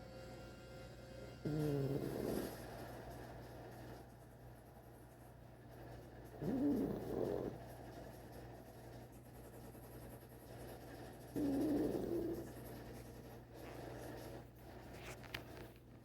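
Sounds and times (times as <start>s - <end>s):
pet snoring: 1.4s - 2.8s, 6.4s - 7.8s, 11.3s - 12.7s.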